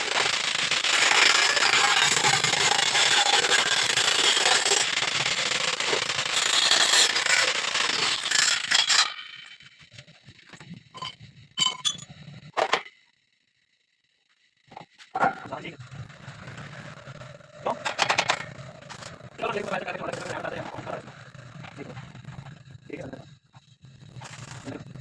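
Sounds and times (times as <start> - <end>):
welding arc crackling: 0.0 - 9.2.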